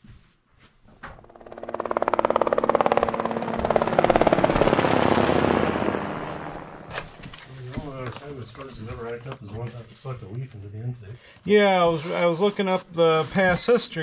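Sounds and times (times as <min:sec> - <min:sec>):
vehicle engine pulsing exhaust: 0:01.2 - 0:07.9.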